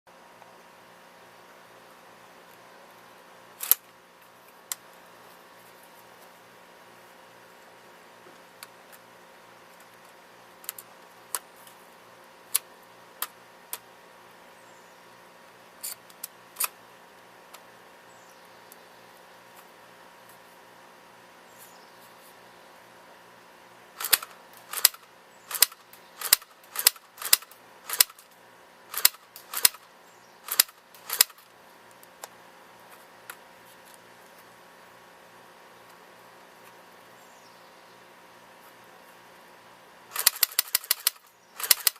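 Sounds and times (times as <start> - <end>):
sharp clicks of airsoft gun: 24.0 - 28.3, 28.9 - 29.8, 30.5 - 31.5, 40.1 - 41.9.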